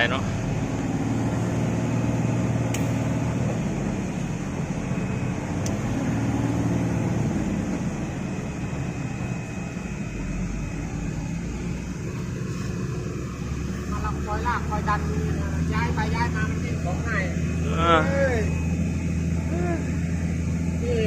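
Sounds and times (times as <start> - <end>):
diesel truck engine running: 0.0 - 21.0.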